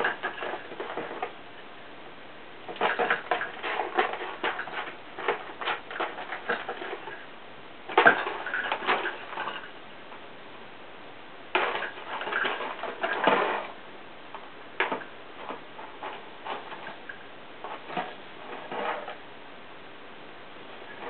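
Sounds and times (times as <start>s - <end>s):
cat scratching cardboard box: 2.7s - 7.2s.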